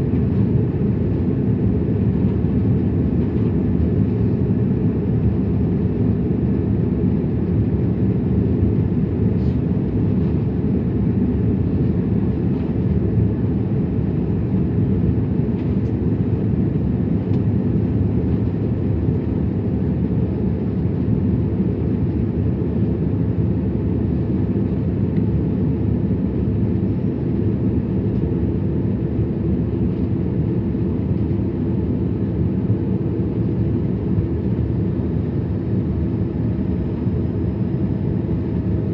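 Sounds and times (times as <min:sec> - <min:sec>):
airplane cabin engine rumble: 0:00.0 - 0:38.9.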